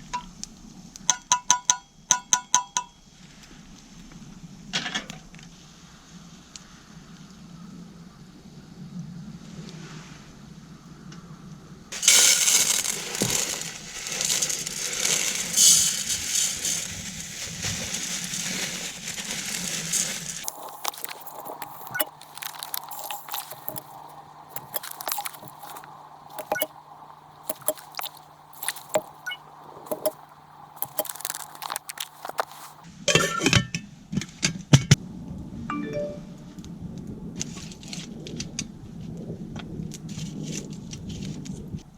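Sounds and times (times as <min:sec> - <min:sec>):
campfire crackling and popping: 0:11.9 - 0:32.9
metal cookware clinking: 0:27.4 - 0:33.8.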